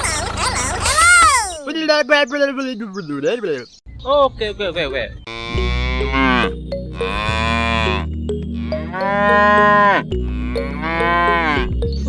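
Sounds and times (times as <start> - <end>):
cattle mooing: 5.3 - 11.8.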